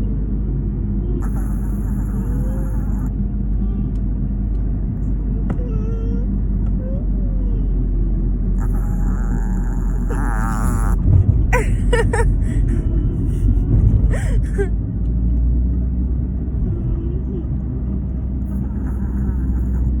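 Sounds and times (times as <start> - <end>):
steady low rumble: 0.0 - 20.0
small dog snoring: 1.1 - 3.2, 8.6 - 12.1, 18.4 - 20.0.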